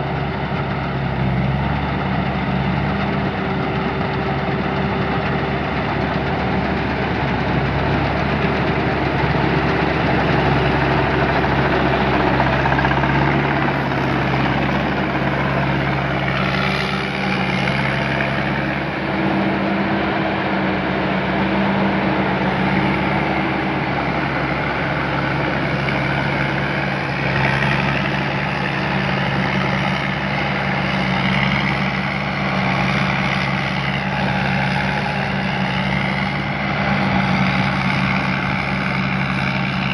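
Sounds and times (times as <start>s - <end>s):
broad machinery noise: 0.0s - 39.9s
diesel engine humming: 0.0s - 39.9s.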